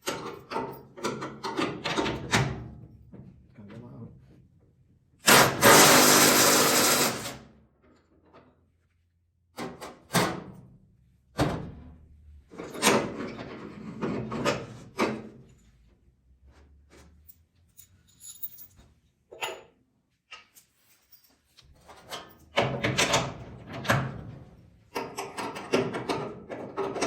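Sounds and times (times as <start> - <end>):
power tool running: 5.3 - 7.4
clatter of parts handled: 16.9 - 19.7.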